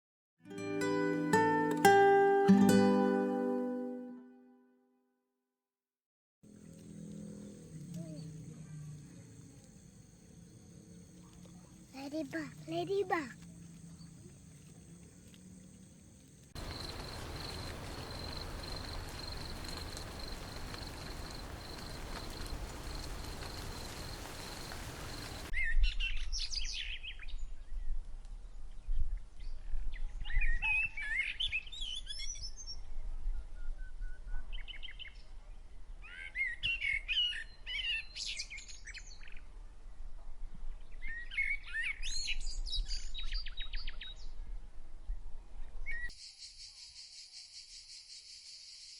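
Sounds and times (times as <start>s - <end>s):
steady hiss: 15.8s - 25.5s
small birds twittering: 16.6s - 25.5s.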